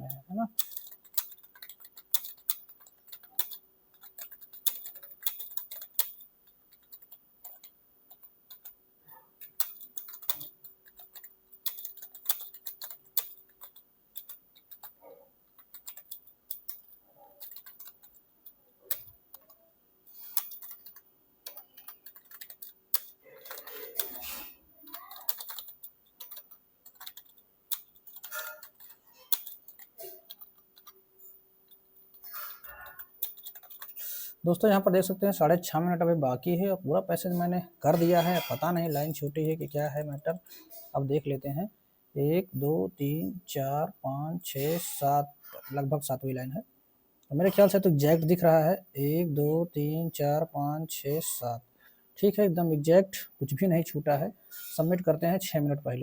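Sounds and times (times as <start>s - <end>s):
computer keyboard typing: 0.0s - 8.8s, 9.4s - 31.0s, 31.6s - 35.6s.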